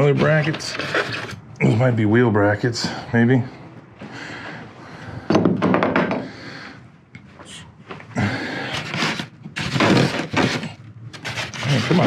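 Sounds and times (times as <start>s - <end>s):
rustling and scraping packing: 0.0s - 1.4s, 8.0s - 12.0s.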